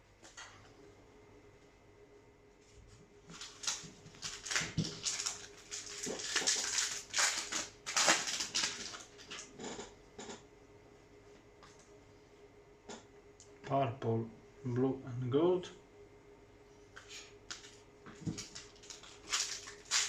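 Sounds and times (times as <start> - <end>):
foil wrapper crinkling and tearing: 3.3 - 9.5, 17.5 - 20.0.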